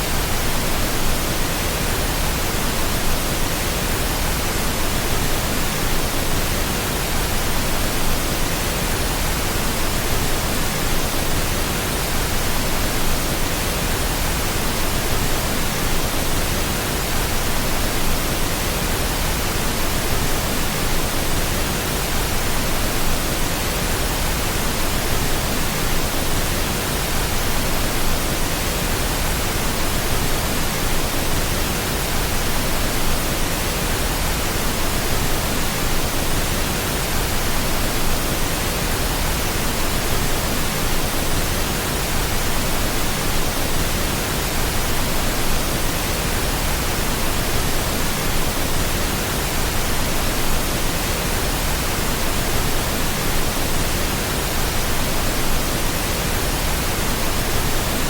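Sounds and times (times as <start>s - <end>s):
pink noise hiss: 0.0s - 58.0s.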